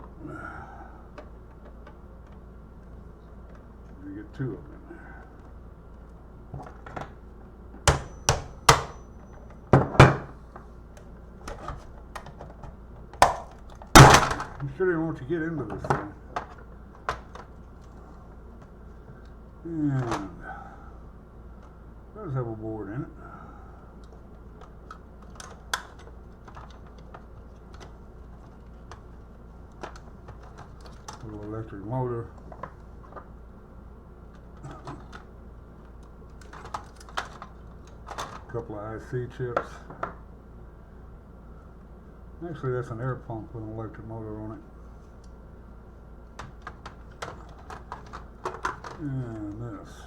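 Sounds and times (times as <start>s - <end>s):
plastic parts clicking and tapping: 1.1s - 4.0s, 5.2s - 14.6s, 15.7s - 18.0s, 24.0s - 31.4s, 34.3s - 38.5s, 46.3s - 49.5s
hammer striking plastic casing: 7.8s - 9.1s, 9.7s - 10.4s, 13.2s - 14.6s.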